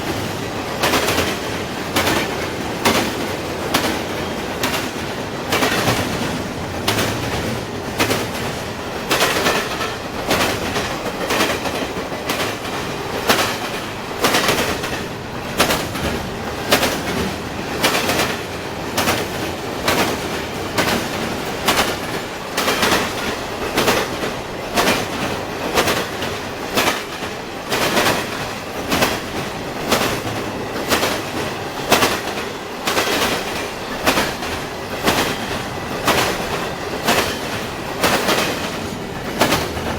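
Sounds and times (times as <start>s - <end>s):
train rumble: 0.0s - 39.9s
train wheels clickety-clack: 0.0s - 39.9s.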